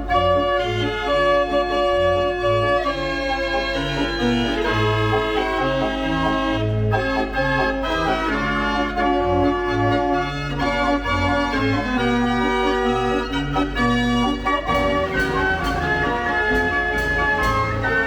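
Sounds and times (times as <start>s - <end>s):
fairground organ tune: 0.0s - 18.0s
drum beats: 13.6s - 18.0s.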